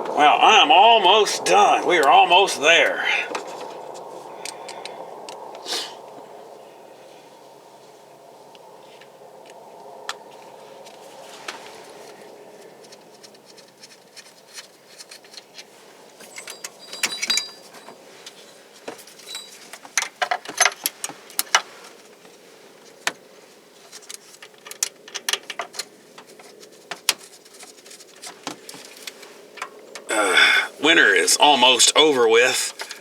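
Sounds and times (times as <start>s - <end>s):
metal tools clinking: 16.2s - 20.9s.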